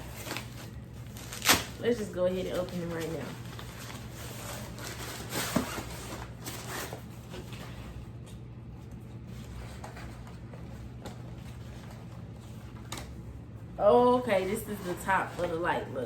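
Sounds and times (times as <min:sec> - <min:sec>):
packaging rustling and scraping: 0:00.0 - 0:08.4, 0:09.2 - 0:13.2
low steady hum: 0:00.0 - 0:16.0.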